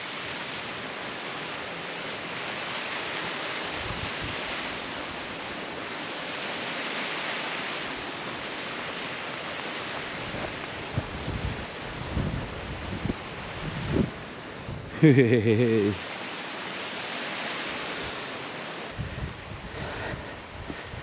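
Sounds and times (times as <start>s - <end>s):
waterfall rushing: 0.0s - 19.0s
wind buffeting microphone: 3.6s - 5.3s, 9.8s - 15.0s, 18.9s - 21.0s.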